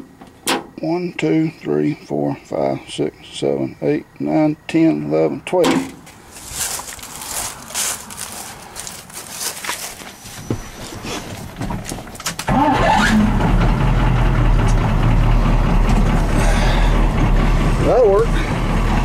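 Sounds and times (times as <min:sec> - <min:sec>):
diesel engine starting and idling: 0:10.2 - 0:19.0.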